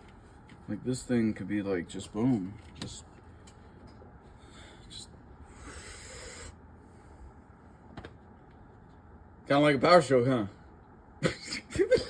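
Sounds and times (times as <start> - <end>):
man hissing with his mouth: 5.5 - 6.6.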